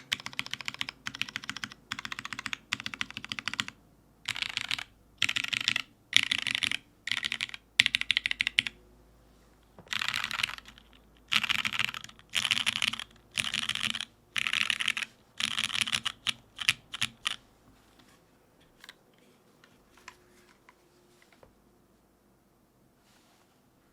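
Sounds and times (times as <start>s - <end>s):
mechanical keyboard typing: 0.0s - 8.8s, 9.9s - 17.4s.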